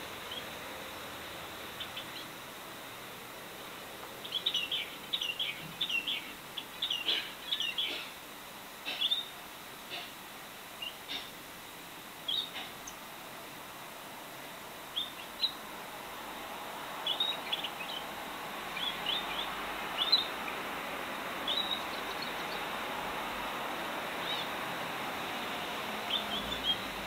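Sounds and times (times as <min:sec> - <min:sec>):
steady hiss: 0:00.0 - 0:27.0
pet birds chirping: 0:04.2 - 0:08.1, 0:18.8 - 0:20.6, 0:21.4 - 0:22.7, 0:26.1 - 0:26.9.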